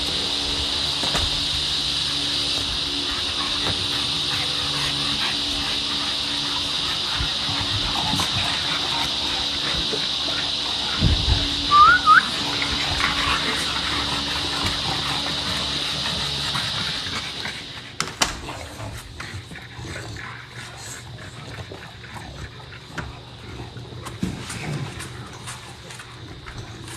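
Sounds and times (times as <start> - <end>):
steady high hiss: 0.0 - 18.0.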